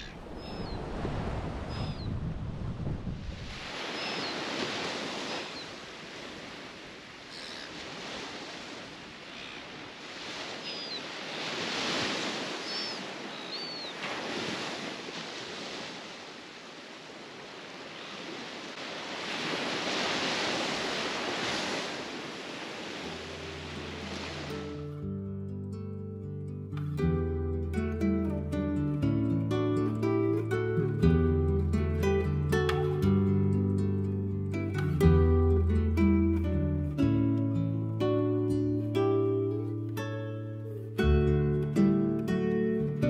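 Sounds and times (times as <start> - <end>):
ocean surf breaking on beach: 0.0 - 25.0
wind: 0.0 - 43.0
short high bird chirps: 12.6 - 14.0.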